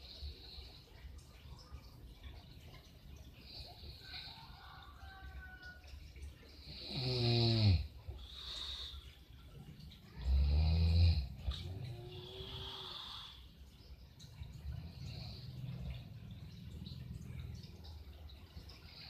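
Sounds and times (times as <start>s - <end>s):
person snoring loudly: 6.8s - 7.9s
soft breathing: 7.8s - 10.4s, 11.1s - 17.0s.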